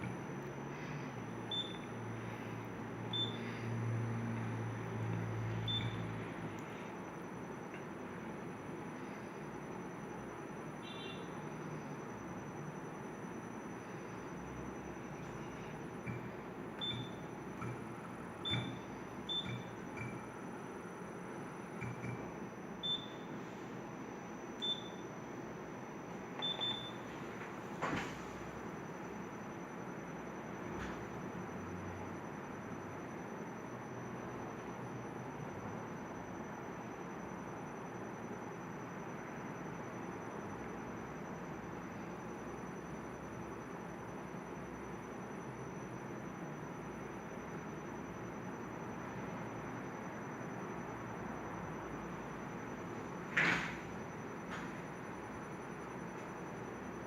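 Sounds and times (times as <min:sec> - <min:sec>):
faint high whine: 0:00.0 - 0:57.0
low electric hum: 0:00.0 - 0:57.0.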